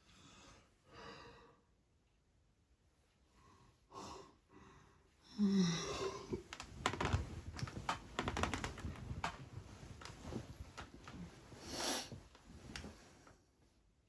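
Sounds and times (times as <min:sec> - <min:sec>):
rustling: 0:06.4 - 0:13.4.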